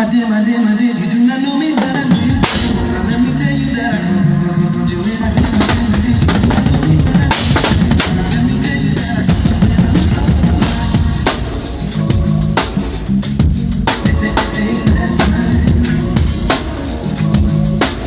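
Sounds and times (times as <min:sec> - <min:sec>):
bass guitar line: 0:01.9 - 0:18.0
bass drum: 0:04.8 - 0:17.9.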